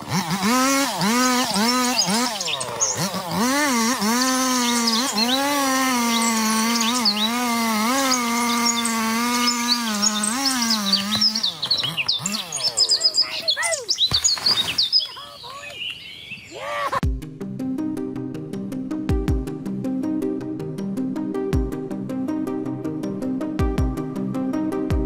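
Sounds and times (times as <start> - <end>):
chainsaw engine revving: 0.0 - 14.5
birds chirping: 0.9 - 17.0
music: 17.0 - 25.0.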